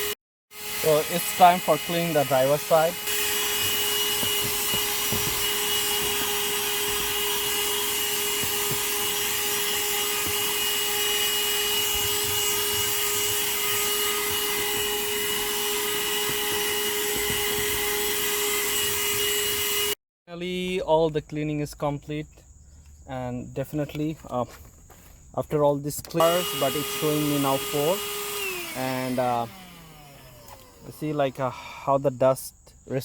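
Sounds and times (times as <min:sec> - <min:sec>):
handheld vacuum cleaner running: 0:00.0 - 0:20.0, 0:26.2 - 0:31.4.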